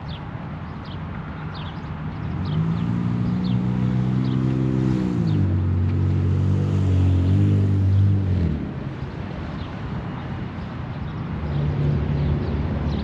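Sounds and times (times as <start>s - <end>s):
birds chirping: 0.0s - 5.6s, 8.9s - 13.0s
vehicle engine: 2.1s - 9.6s.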